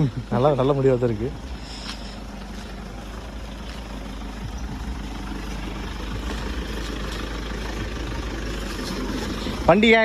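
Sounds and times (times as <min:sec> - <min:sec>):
car engine under load: 0:00.0 - 0:10.0.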